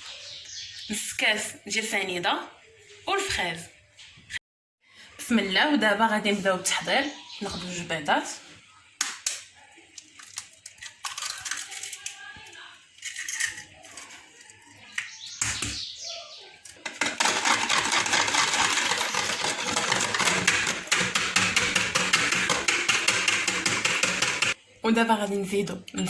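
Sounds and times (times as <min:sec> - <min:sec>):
eggs cracking into bowl: 0:09.0 - 0:15.6
eggs beaten in bowl: 0:16.8 - 0:24.6.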